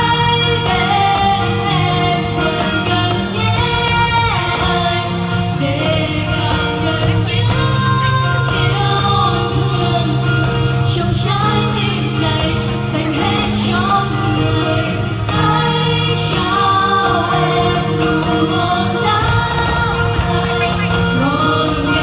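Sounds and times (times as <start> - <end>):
pop song singing: 0.0 - 22.0
sustained bass notes: 19.1 - 21.6.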